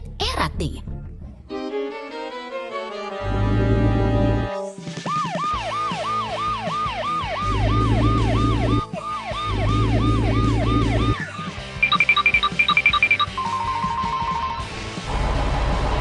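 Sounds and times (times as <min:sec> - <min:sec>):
cartoon siren wailing: 0:05.2 - 0:11.4.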